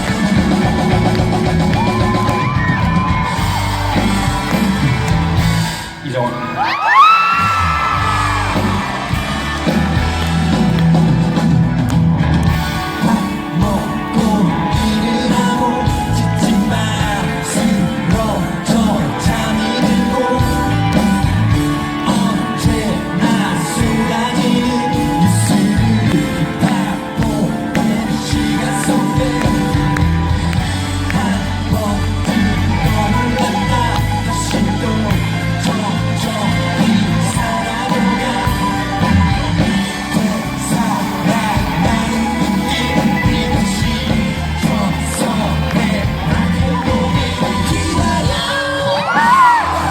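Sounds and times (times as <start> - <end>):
electric guitar: 0.0 - 49.9
lead vocal singing: 0.0 - 49.9
rock band playing: 0.0 - 49.9.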